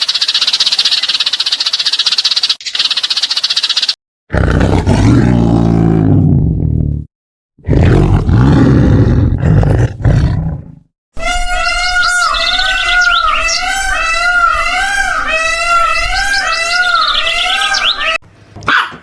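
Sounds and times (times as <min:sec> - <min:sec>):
deep drawn-out animal calls: 0:07.6 - 0:18.2
higher pitched call: 0:11.2 - 0:18.2.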